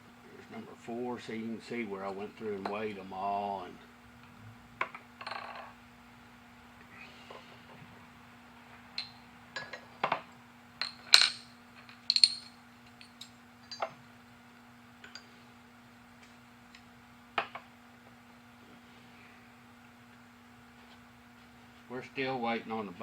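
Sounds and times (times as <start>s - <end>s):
faint steady hum: 0.0s - 23.0s
metal parts clinking on workbench: 10.8s - 13.9s.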